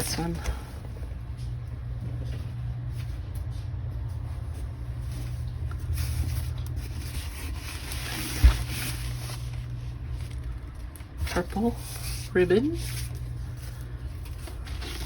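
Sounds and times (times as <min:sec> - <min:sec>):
steady low hum: 0:00.0 - 0:15.0
packaging rustling: 0:05.8 - 0:15.0.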